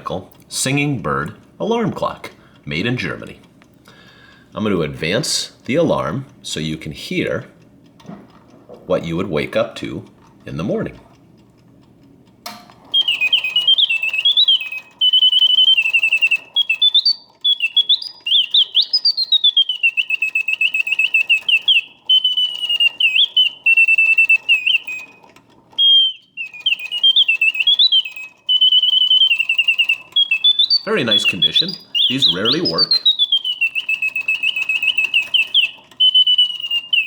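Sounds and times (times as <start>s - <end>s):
mechanical bird singing: 0.0s - 3.5s, 8.8s - 11.1s, 12.8s - 37.0s
alarm clock click: 12.5s - 37.0s.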